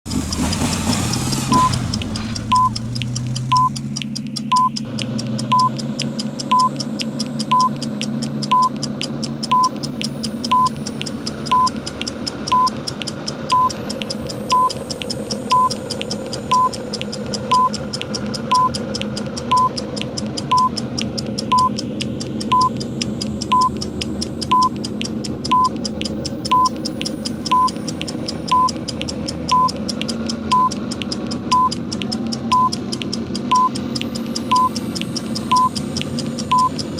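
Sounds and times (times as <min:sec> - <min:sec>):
rapid clock ticking: 0:00.0 - 0:36.9
steady engine drone: 0:00.0 - 0:36.9
short electronic beep: 0:01.5 - 0:02.8, 0:03.5 - 0:03.8, 0:05.5 - 0:05.8, 0:10.5 - 0:10.8, 0:34.5 - 0:34.8, 0:35.5 - 0:35.8.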